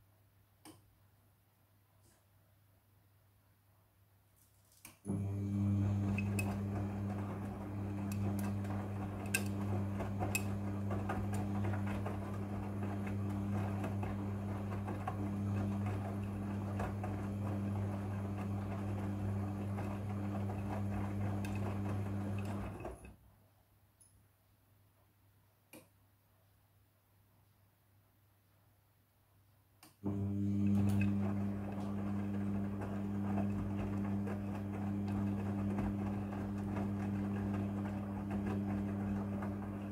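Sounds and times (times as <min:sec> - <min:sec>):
washing machine motor hum: 0:05.1 - 0:23.1, 0:30.0 - 0:39.9.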